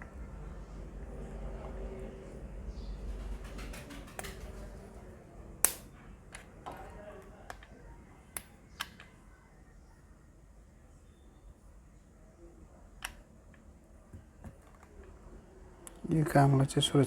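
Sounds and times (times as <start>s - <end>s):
sharp plastic clicks and taps: 5.6s - 6.8s.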